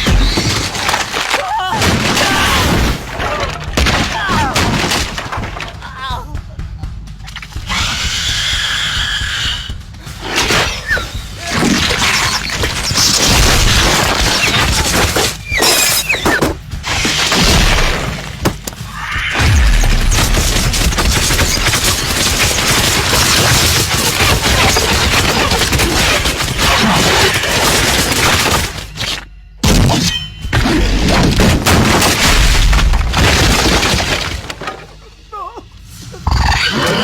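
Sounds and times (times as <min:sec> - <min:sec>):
crashing and smashing: 0:00.0 - 0:05.9, 0:11.4 - 0:29.9, 0:30.6 - 0:35.0
deep booming rumbles: 0:16.4 - 0:26.3.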